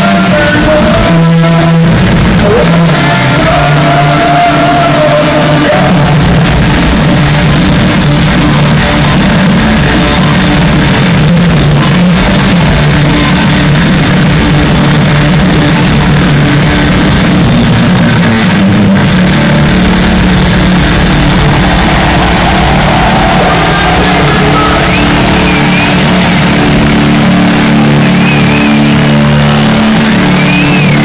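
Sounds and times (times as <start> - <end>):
distorted live heavy rock band: 0.0 - 31.0.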